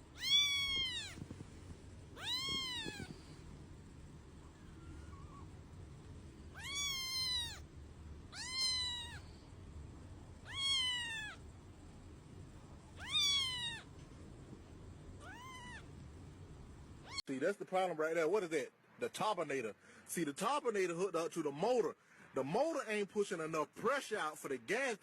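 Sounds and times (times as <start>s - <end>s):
cat meowing: 0.0s - 1.3s, 2.2s - 3.4s, 4.6s - 5.5s, 6.5s - 7.7s, 8.3s - 9.3s, 10.4s - 11.4s, 13.0s - 13.9s, 15.2s - 15.9s.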